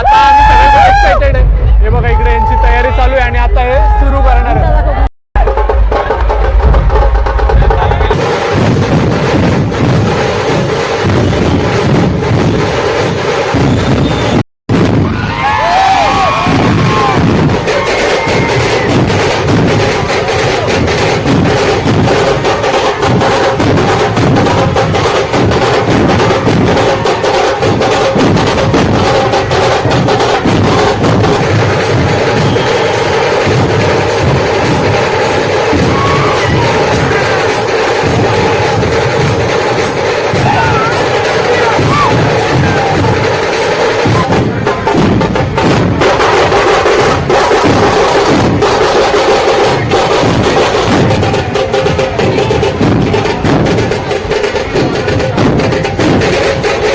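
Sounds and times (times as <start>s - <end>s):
drum troupe beating fast rhythm: 0.0s - 56.9s.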